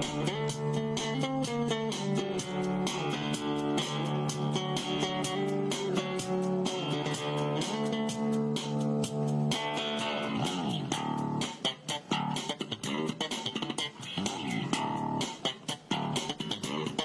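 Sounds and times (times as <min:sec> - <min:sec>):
guitar and bass music: 0:00.0 - 0:17.0.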